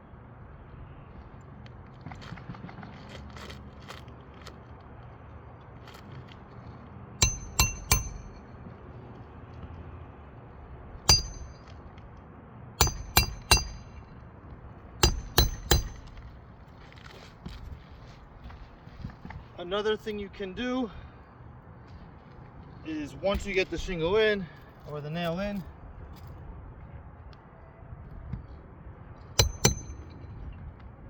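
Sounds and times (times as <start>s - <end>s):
hammer striking roofing nail: 7.2s - 8.4s, 11.1s - 11.6s, 12.8s - 14.0s, 15.0s - 16.2s, 29.4s - 30.1s.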